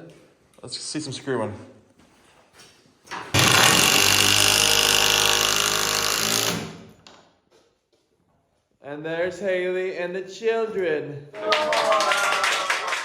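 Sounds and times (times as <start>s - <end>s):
power drill driving screw into wood: 3.3s - 7.0s.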